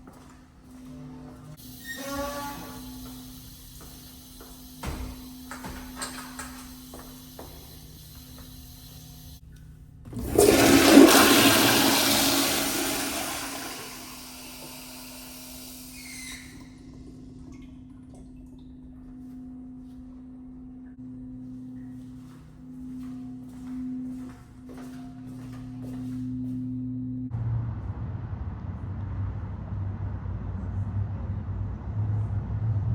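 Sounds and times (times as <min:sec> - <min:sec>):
faint hum: 0:00.0 - 0:32.8
toilet flushing: 0:01.5 - 0:09.4, 0:10.1 - 0:19.0.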